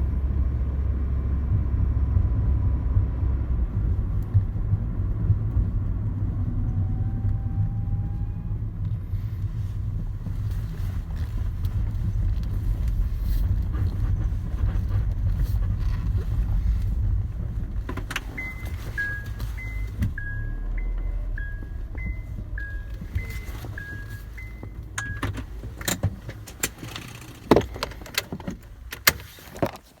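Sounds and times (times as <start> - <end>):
car road and engine rumble: 0.0 - 30.0
sharp clicks and knocks: 10.3 - 20.4, 21.9 - 30.0
two-tone electronic chime: 18.4 - 25.3.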